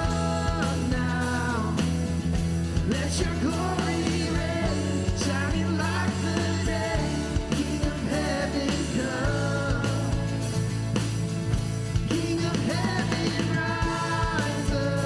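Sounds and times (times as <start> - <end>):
person singing: 0.0 - 1.9, 2.8 - 10.6, 12.0 - 15.0
bass: 0.0 - 15.0
live band playing: 0.0 - 15.0.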